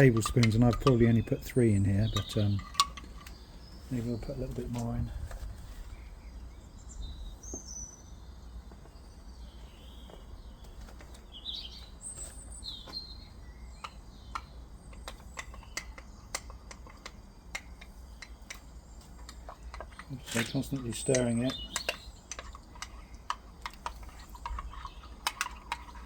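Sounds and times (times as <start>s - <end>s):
spoon stirring and tapping: 0.0s - 3.0s
small birds chirping: 0.0s - 26.0s.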